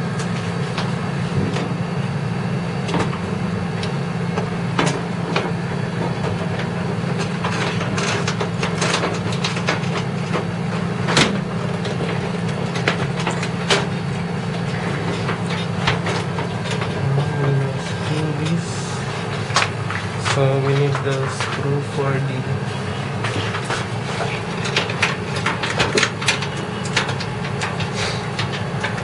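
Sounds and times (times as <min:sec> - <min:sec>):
steady low hum: 0:00.0 - 0:29.0
computer parts clicking and knocking: 0:23.3 - 0:29.0.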